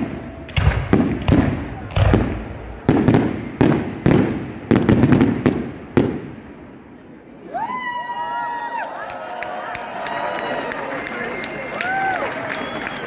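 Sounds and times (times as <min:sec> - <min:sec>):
fireworks bangs: 0:00.0 - 0:07.0.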